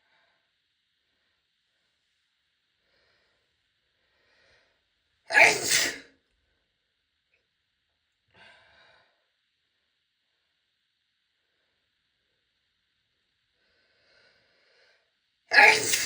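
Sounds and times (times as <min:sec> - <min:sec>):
woman sneezing: 0:05.3 - 0:06.0, 0:15.5 - 0:16.0.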